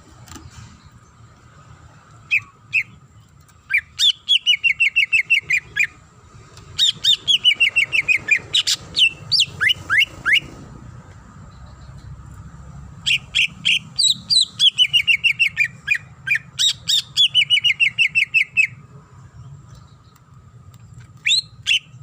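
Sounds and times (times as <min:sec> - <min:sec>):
bird whistling song: 0:02.3 - 0:03.0, 0:03.6 - 0:06.0, 0:06.8 - 0:10.6, 0:13.0 - 0:18.8, 0:21.2 - 0:22.0.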